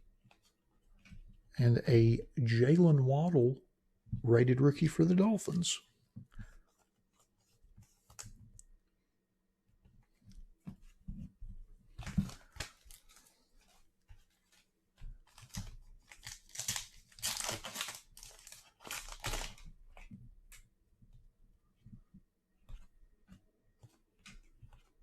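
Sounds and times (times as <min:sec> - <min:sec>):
wrapper tearing and crinkling: 0:15.3 - 0:19.6.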